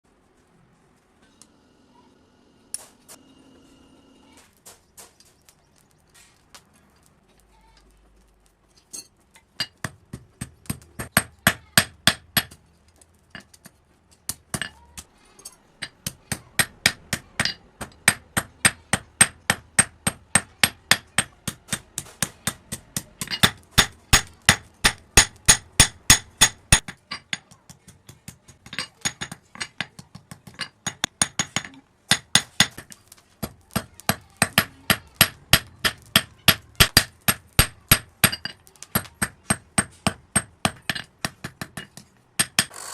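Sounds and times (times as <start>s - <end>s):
hammer striking steel on anvil: 9.6s - 12.6s, 15.8s - 27.7s, 28.3s - 42.8s.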